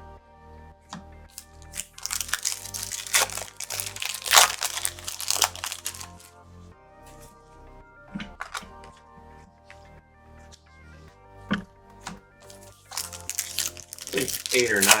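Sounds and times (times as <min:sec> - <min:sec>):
background music: 0:00.0 - 0:15.0
foil wrapper crinkling: 0:01.3 - 0:06.3, 0:12.4 - 0:15.0.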